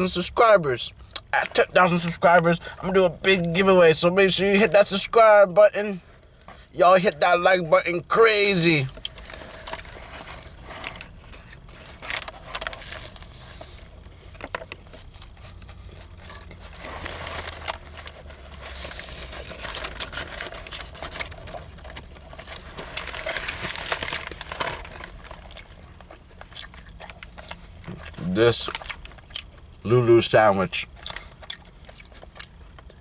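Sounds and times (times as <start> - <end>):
paper wrapper crinkling: 7.0 - 29.6.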